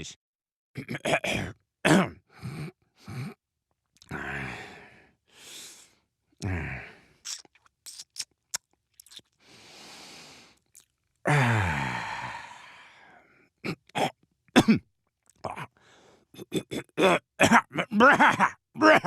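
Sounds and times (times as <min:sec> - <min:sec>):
man coughing and clearing throat: 0:00.8 - 0:02.6, 0:13.6 - 0:14.8, 0:16.4 - 0:19.0
man groaning sigh: 0:06.4 - 0:06.9, 0:11.3 - 0:13.0
man grunting: 0:06.4 - 0:06.9, 0:16.5 - 0:19.0
mouth clicks and lip smacks: 0:07.2 - 0:09.5, 0:10.6 - 0:11.0
breathy exhale: 0:09.4 - 0:10.6, 0:11.4 - 0:13.3.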